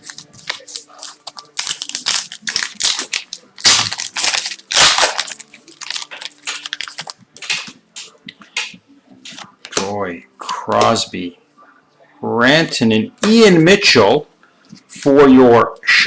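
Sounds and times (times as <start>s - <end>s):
foil wrapper tearing and crinkling: 0.0s - 7.8s.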